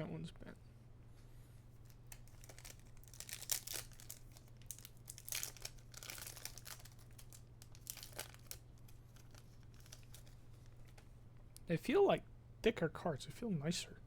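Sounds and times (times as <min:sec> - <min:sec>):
low steady hum: 0:00.0 - 0:14.0
foil wrapper crinkling: 0:01.8 - 0:11.0.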